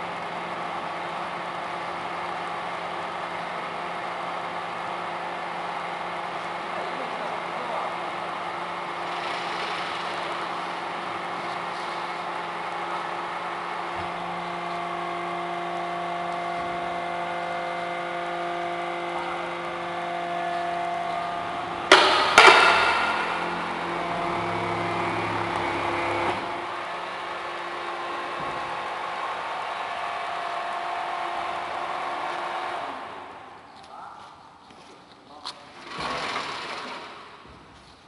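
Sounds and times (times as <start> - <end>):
baler machine humming: 0.0 - 33.8
sharp loud bangs: 21.9 - 24.4.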